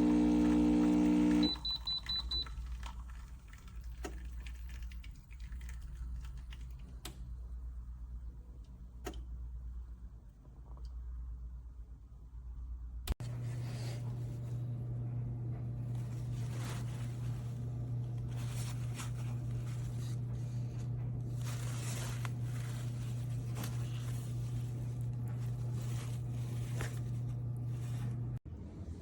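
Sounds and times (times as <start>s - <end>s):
espresso machine buzzing: 0.0s - 1.7s.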